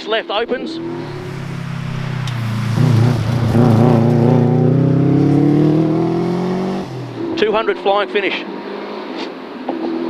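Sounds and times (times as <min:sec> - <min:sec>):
car engine accelerating hard: 0:00.5 - 0:08.0.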